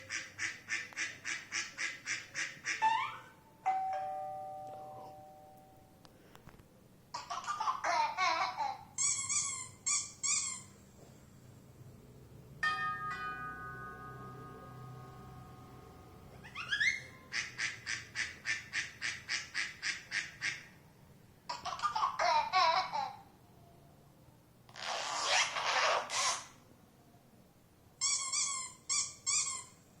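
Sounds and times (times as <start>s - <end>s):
long ringing chime: 3.7s - 5.9s, 12.6s - 16.2s
short rising squeak: 24.7s - 26.5s.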